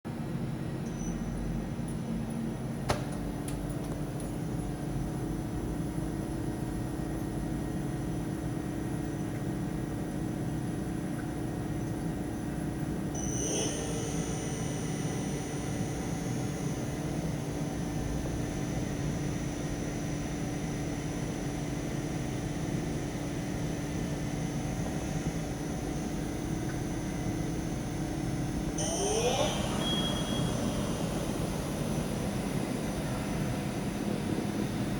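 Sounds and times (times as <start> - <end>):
lathe machine hum: 24.2 - 34.9
rising whine: 28.4 - 34.9
high-pitched tones: 28.8 - 31.9.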